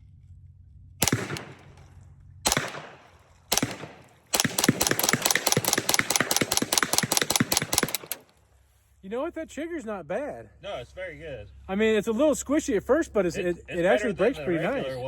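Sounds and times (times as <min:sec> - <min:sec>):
suppressed rifle shots: 0:01.0 - 0:08.3.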